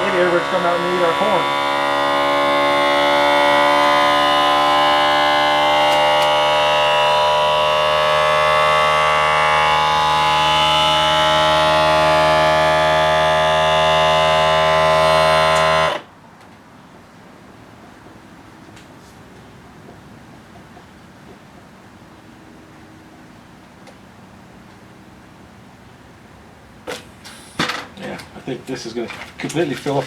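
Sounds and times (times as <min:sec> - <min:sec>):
electric pump motor buzzing: 0:00.0 - 0:16.1.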